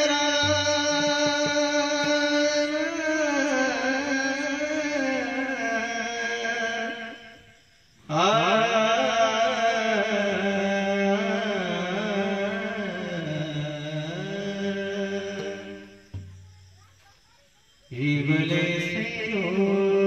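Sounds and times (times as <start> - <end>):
man singing a long note: 0.0 - 7.4, 8.1 - 16.0, 17.9 - 20.0
short low thud: 15.4 - 16.5.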